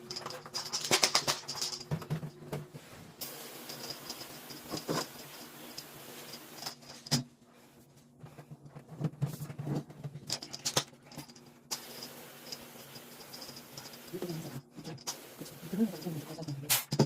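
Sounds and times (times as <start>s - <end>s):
plastic vent parts rattling: 0.0s - 2.5s, 8.4s - 11.6s
water spray hissing: 11.8s - 16.9s.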